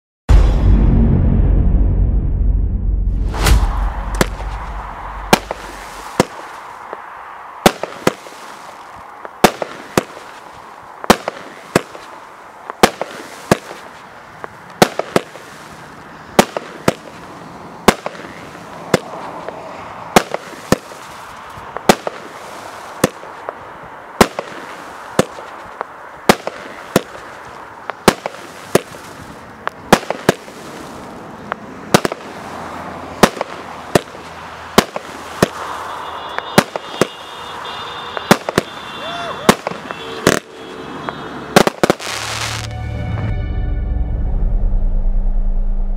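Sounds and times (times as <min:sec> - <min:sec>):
firework bangs: 0:03.1 - 0:42.7
firework hiss: 0:03.2 - 0:37.6, 0:41.6 - 0:42.7.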